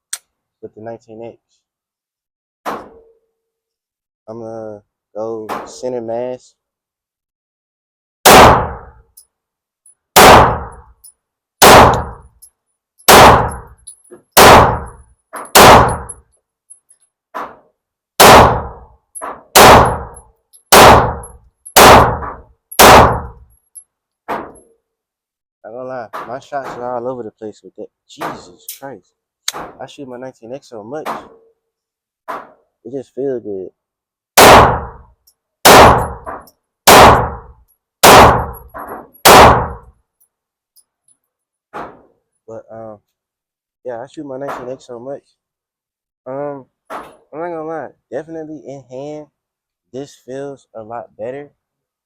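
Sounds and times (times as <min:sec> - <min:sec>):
pistol shots: 0:08.2 - 0:08.9, 0:10.2 - 0:10.8, 0:11.6 - 0:12.2, 0:13.1 - 0:13.7, 0:14.4 - 0:16.2, 0:18.2 - 0:18.8, 0:19.5 - 0:23.4, 0:34.4 - 0:35.0, 0:35.6 - 0:36.3, 0:36.9 - 0:39.8.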